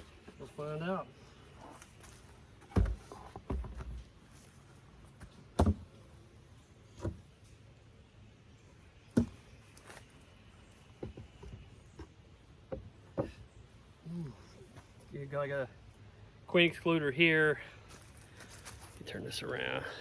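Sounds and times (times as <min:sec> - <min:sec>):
wooden beehive parts knocking: 0:09.1 - 0:09.5, 0:10.9 - 0:13.4.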